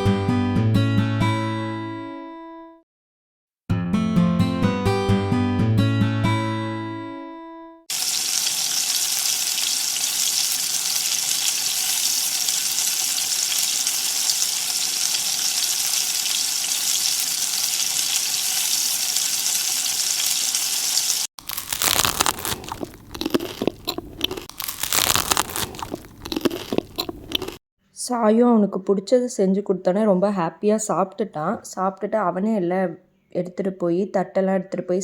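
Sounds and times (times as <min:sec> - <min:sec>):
deep-frying sizzle in oil: 0:07.9 - 0:27.6
crunching and tearing: 0:21.4 - 0:27.6.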